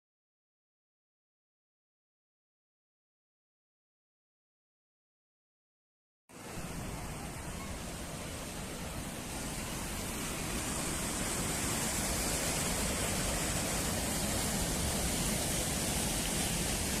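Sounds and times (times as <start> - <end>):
steady rushing noise: 6.3 - 17.0.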